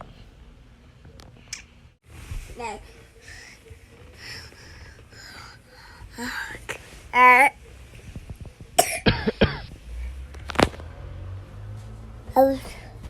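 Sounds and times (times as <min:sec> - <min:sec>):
child coughing: 0:08.8 - 0:09.7.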